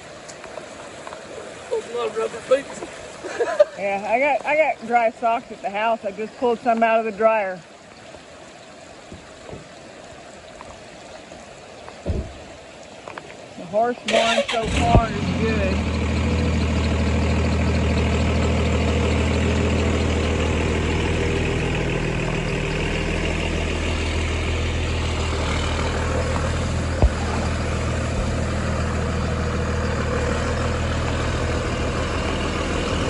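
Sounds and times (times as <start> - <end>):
truck engine idling: 14.2 - 33.0.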